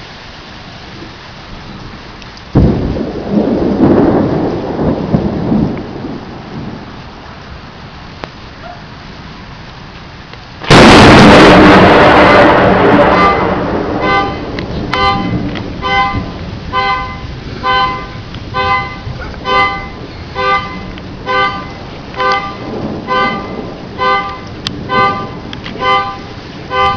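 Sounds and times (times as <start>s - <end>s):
thunder rumbling: 0.0s - 26.9s
car alarm horn honks: 10.7s - 26.9s.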